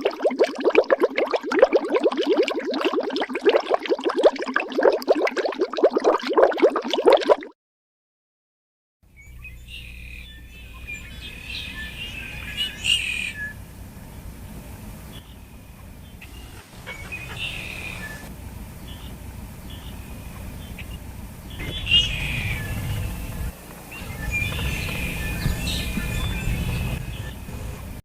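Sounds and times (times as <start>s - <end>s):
rapid bubbling pulses: 0.0s - 7.6s, 21.5s - 28.0s
low outdoor background: 9.0s - 28.0s
small birds chirping: 9.2s - 27.8s.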